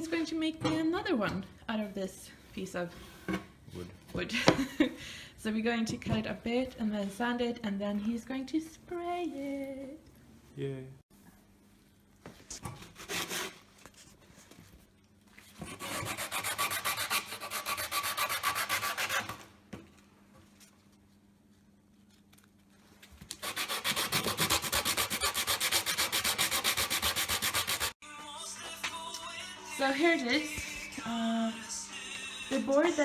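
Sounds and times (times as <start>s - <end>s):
sanding wooden board: 15.7s - 19.3s, 23.4s - 28.0s.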